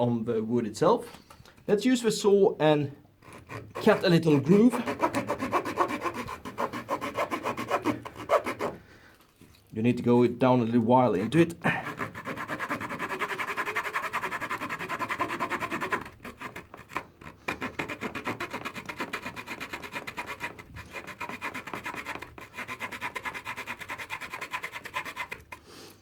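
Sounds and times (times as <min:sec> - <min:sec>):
saw blade cutting wood: 0:03.2 - 0:08.8, 0:11.2 - 0:25.7.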